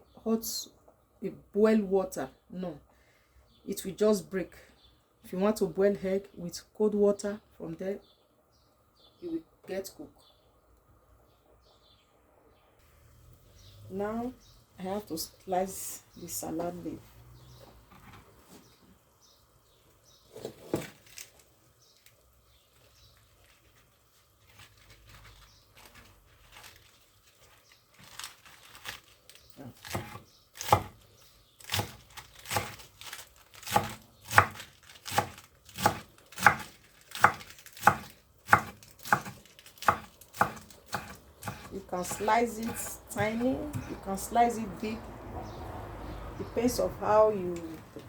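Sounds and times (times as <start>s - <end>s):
knife slicing salad leaves: 29.7s - 31.0s, 31.6s - 44.1s.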